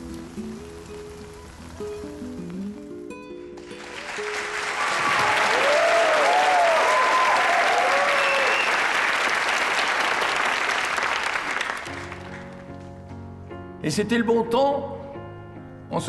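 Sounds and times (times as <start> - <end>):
audience applauding: 3.6 - 12.6
people whooping: 3.8 - 10.4.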